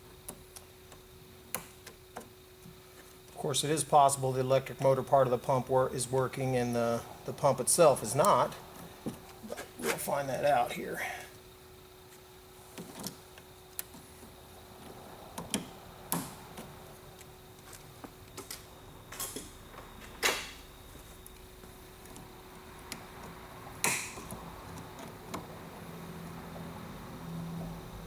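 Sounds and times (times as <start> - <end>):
faint steady hum: 0.0 - 28.0
tools clicking and knocking: 14.8 - 17.3.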